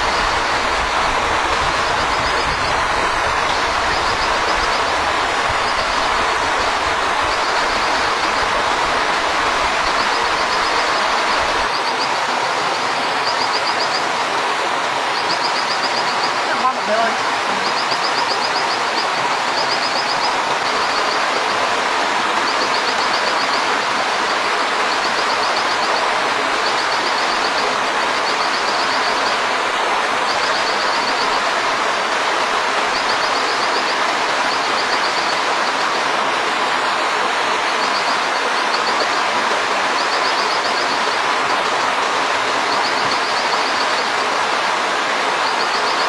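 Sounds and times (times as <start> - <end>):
rushing outdoor noise: 0.0 - 46.0
insect pulsed trills: 1.9 - 4.9, 5.5 - 14.3, 15.1 - 21.8, 22.4 - 29.5, 30.3 - 31.5, 32.8 - 36.1, 37.7 - 44.2.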